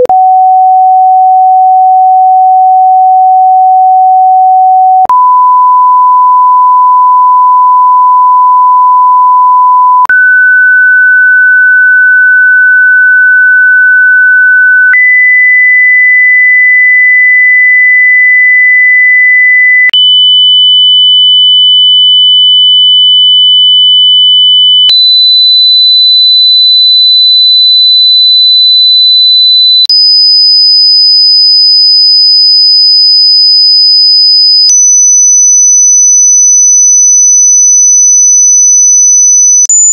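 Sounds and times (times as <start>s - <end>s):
sine test tones: 0.0s - 10.4s, 19.8s - 30.1s, 33.5s - 39.9s.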